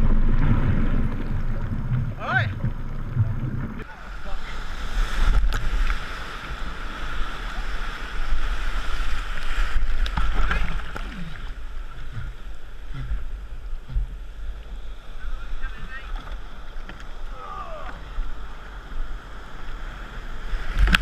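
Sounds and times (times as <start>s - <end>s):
breaking waves: 0.0s - 21.0s
short falling cries: 17.3s - 18.1s.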